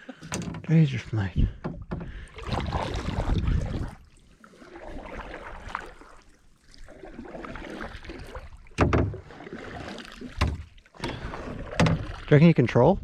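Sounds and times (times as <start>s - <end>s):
knocks on canoe: 1.6s - 2.2s, 8.8s - 9.2s, 10.3s - 12.2s
paddle splashing in water: 1.6s - 12.6s.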